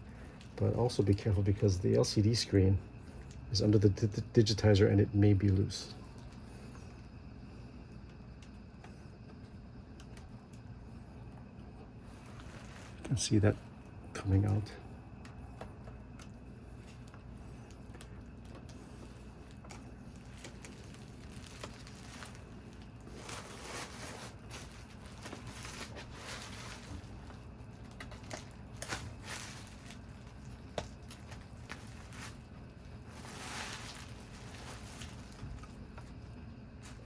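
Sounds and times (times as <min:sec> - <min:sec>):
faint scraping and rubbing: 0:18.8 - 0:36.2.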